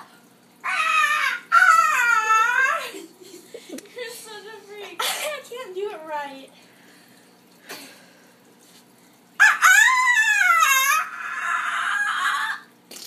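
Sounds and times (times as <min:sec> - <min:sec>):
rooster crowing: 0:09.4 - 0:12.7.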